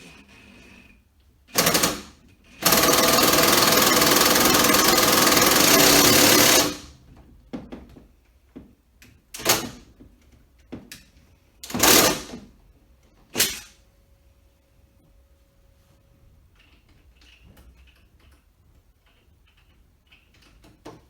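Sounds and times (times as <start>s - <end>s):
impact driver hammering: 1.6s - 6.9s.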